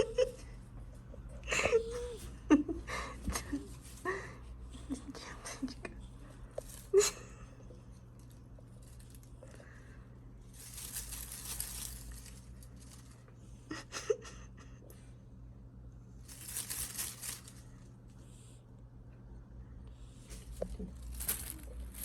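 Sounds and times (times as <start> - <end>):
low steady hum: 0.0 - 22.0
rustling and scratching: 6.2 - 7.1, 7.8 - 13.4, 16.2 - 18.0, 20.2 - 22.0.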